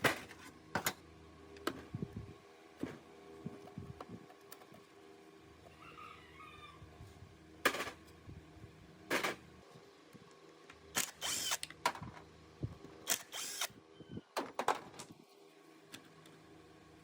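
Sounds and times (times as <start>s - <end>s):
workshop tool bursts: 11.0s - 11.7s, 13.1s - 13.7s.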